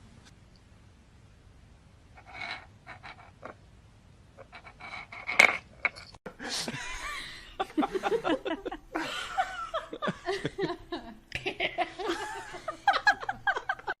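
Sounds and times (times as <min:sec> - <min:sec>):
person laughing: 0:06.4 - 0:14.0.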